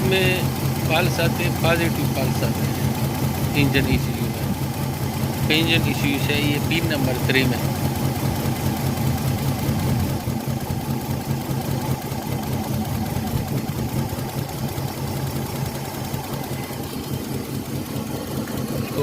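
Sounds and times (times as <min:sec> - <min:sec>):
car engine idling with misfire: 0:00.0 - 0:19.0.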